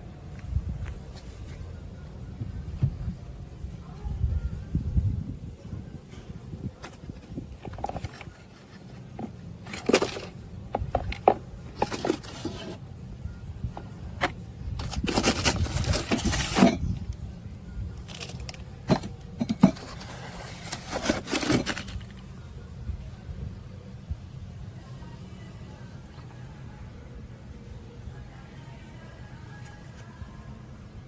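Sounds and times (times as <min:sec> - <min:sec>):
handling clicks and knocks: 0:06.8 - 0:12.8, 0:13.8 - 0:17.0, 0:18.0 - 0:22.2
rustling scrape: 0:06.8 - 0:12.8, 0:13.8 - 0:17.1, 0:18.0 - 0:22.2.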